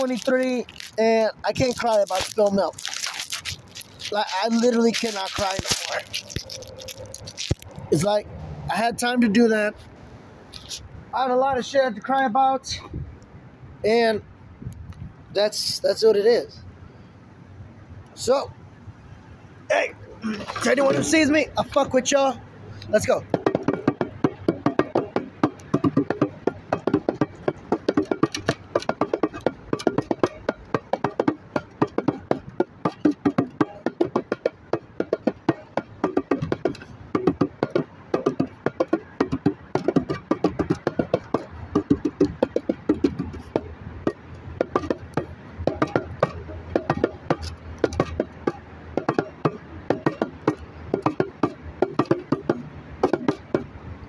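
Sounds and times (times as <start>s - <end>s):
bongos played by hand: 2.0s - 7.6s, 23.2s - 53.7s.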